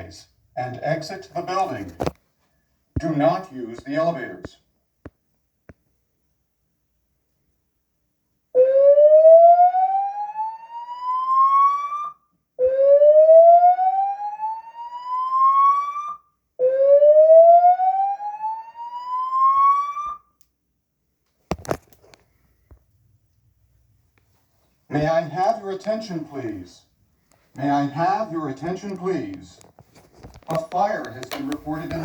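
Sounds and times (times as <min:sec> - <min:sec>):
evacuation message voice: 0:00.0 - 0:02.1, 0:03.0 - 0:04.6, 0:24.9 - 0:26.9, 0:27.6 - 0:29.6, 0:30.5 - 0:32.0.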